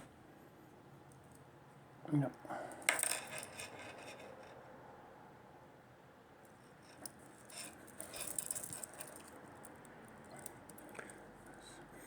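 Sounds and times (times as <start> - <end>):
wristwatch clicks and rattles: 2.8 - 4.4, 7.0 - 11.2.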